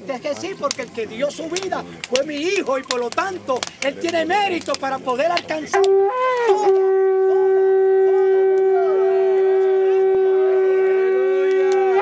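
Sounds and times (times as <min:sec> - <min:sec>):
faint voices: 0:00.0 - 0:12.0
shofar long held note: 0:05.7 - 0:12.0.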